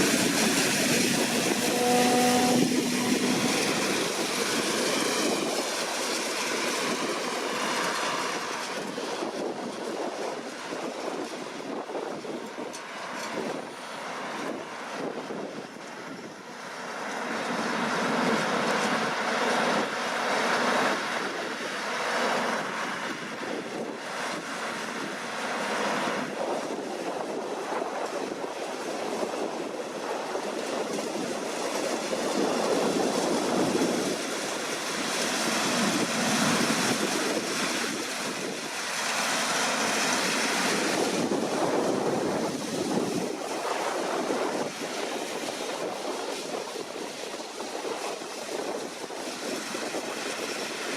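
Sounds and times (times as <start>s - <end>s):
combine harvester running: 0.0s - 50.9s.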